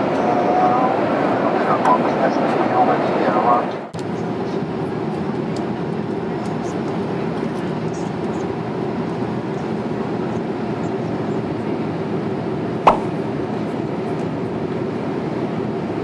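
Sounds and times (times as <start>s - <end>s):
airliner cabin rumble: 0.0s - 16.0s
sharp click: 12.9s - 13.1s.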